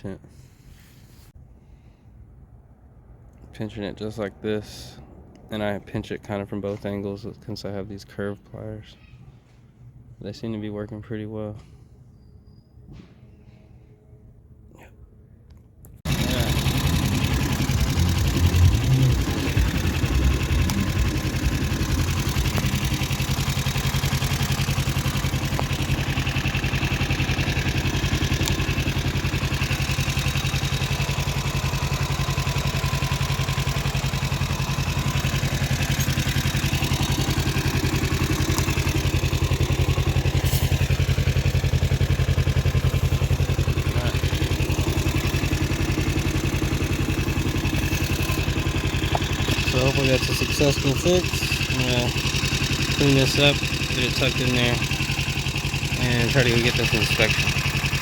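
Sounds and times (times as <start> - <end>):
motorcycle engine idling: 16.1 - 58.0.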